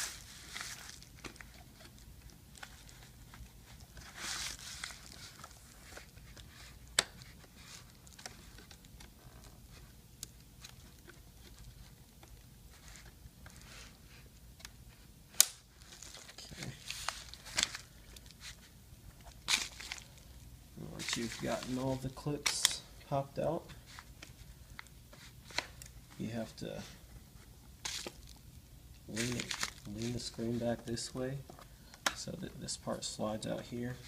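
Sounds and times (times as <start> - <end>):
plastic scraping and handling: 15.8 - 22.8, 29.1 - 32.2.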